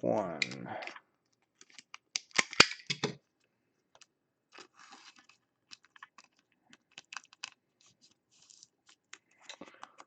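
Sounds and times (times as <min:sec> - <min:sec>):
plastic crinkling: 0:03.9 - 0:10.0.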